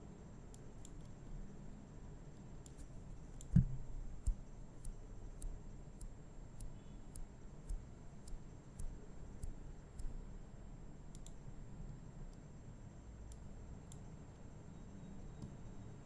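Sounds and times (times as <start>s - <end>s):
faint sharp clicks: 2.4s - 10.2s, 11.1s - 11.4s, 13.2s - 14.5s.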